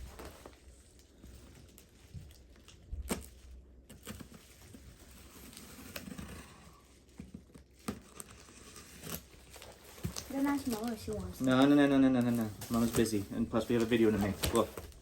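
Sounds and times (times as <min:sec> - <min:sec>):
cardboard packaging taps and rustles: 0:09.0 - 0:15.0.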